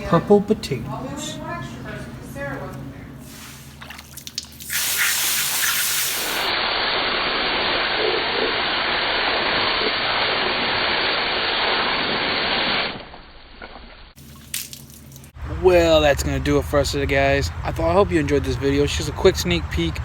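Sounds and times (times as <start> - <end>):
water spraying: 3.2 - 15.4.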